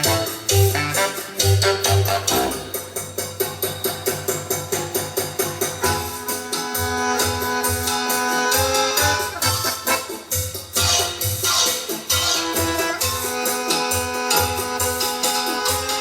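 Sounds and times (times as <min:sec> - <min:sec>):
held musical notes: 0:00.0 - 0:03.0, 0:05.6 - 0:16.0
fast percussion strikes: 0:00.0 - 0:16.0.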